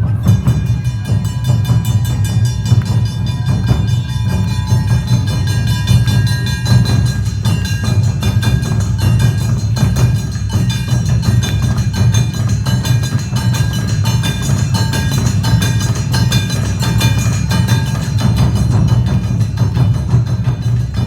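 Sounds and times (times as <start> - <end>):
drums in fast beat: 0.0 - 21.0
metal gong strikes: 0.0 - 21.0.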